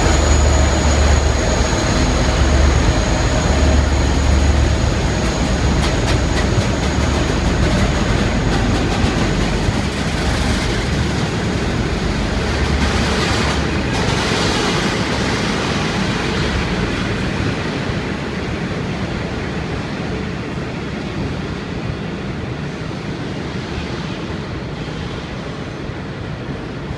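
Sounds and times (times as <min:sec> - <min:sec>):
train wheels clicking over rail joints: 0:00.0 - 0:17.6
train rumble: 0:00.0 - 0:26.9.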